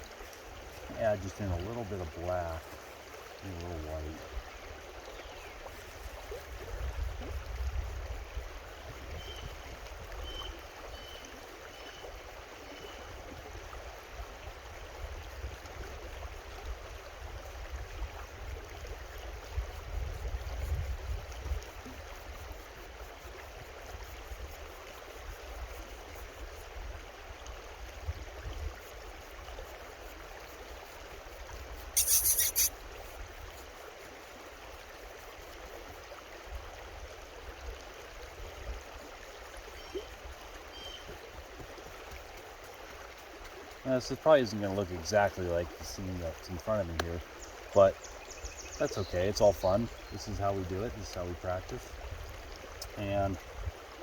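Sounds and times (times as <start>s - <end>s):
creek water over rocks: 0.0s - 54.0s
faint high chirps: 32.0s - 32.7s.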